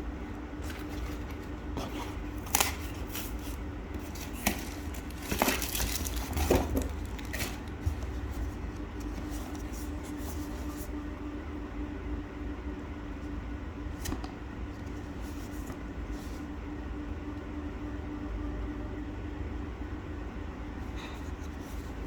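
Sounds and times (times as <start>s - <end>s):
steady low hum: 0.0s - 22.0s
handling rustles and clicks: 0.6s - 10.9s.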